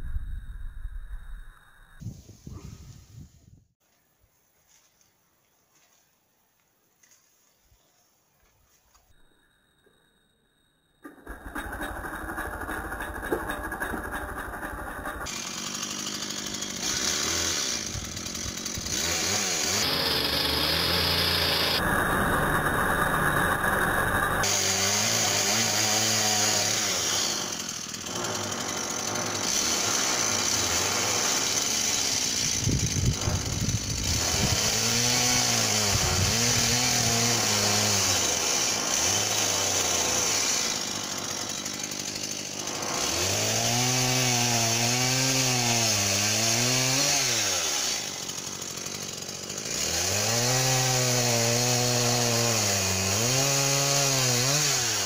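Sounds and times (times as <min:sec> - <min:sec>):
chainsaw cutting: 0:11.0 - 0:55.0.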